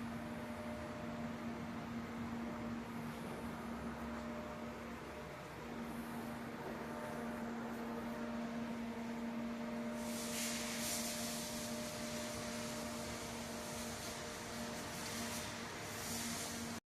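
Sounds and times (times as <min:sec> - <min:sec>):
welder electrical hum: 0:00.0 - 0:16.8
welding arc hissing crackle: 0:09.8 - 0:16.8.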